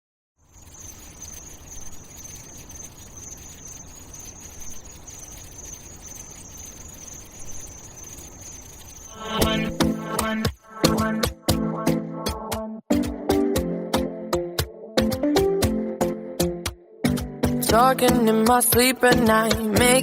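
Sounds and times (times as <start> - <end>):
high-pitched chirring tone: 0.4 - 11.2
dance-pop music: 9.1 - 13.7, 17.1 - 20.0.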